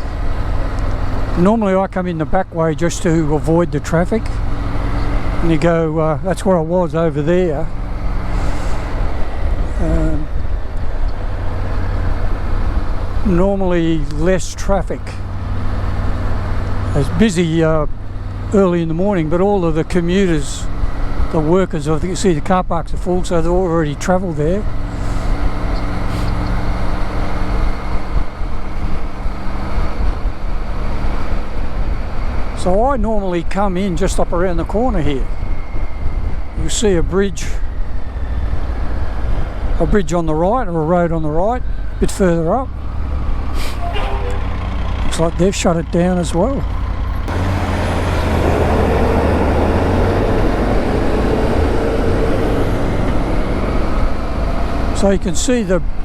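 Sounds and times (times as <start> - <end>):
motorcycle engine rumble: 0.0 - 32.4, 37.4 - 50.8
road noise: 0.0 - 56.0
motorcycle engine running: 43.8 - 47.4.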